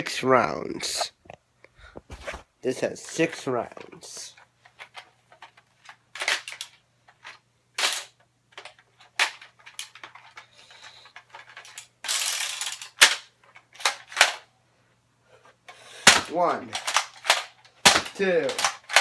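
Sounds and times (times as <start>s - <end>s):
plastic toy blaster clacks: 16.1s - 19.0s.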